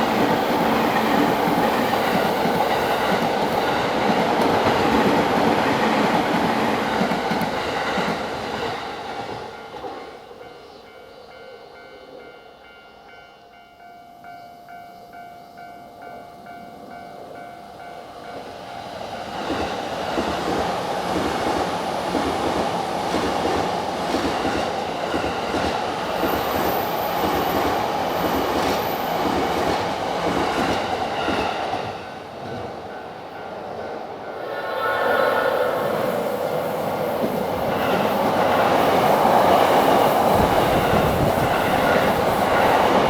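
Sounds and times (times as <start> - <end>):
train wheels clickety-clack: 0.0 - 10.2, 18.3 - 33.1, 36.4 - 43.0.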